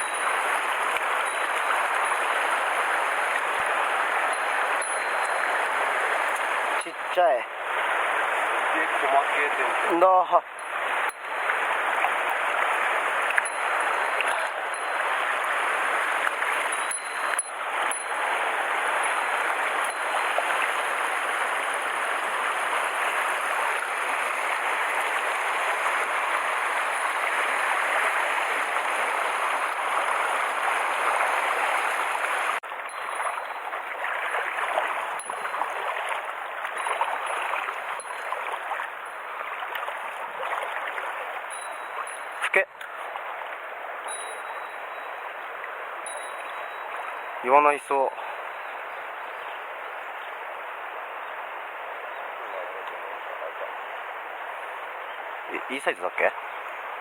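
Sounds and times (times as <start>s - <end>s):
stream water rushing: 0.0s - 57.0s.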